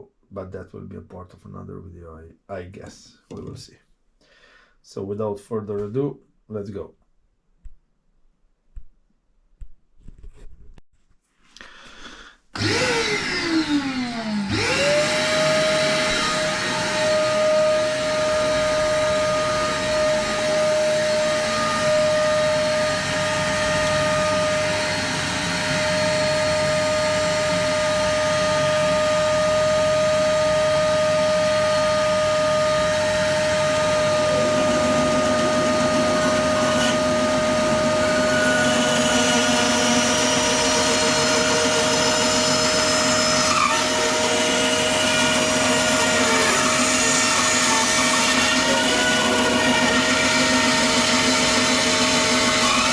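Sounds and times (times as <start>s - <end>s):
bandsaw motor whining: 12.6s - 52.9s.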